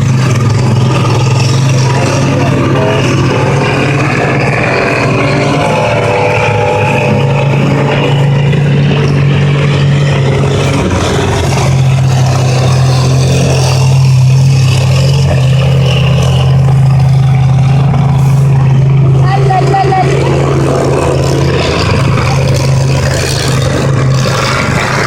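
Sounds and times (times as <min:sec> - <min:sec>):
combine harvester engine drone: 0:00.0 - 0:25.0.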